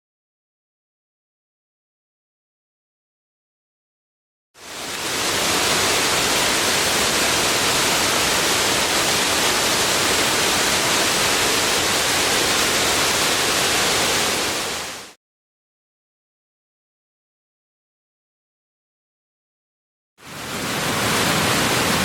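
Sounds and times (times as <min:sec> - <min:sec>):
waterfall rushing: 0:04.6 - 0:15.2, 0:20.2 - 0:22.0.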